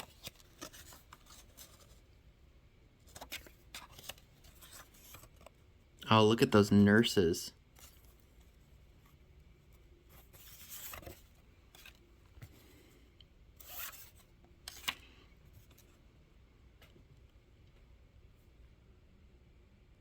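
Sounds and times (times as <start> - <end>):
paper rustling and sliding: 0.0 - 2.1, 3.0 - 5.6, 10.1 - 12.6, 13.6 - 15.9.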